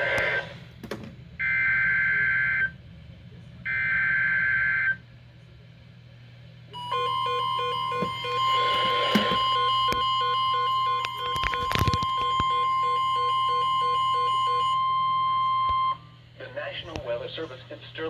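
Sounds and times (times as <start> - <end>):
weather radio alarm tone: 6.8 - 16.1.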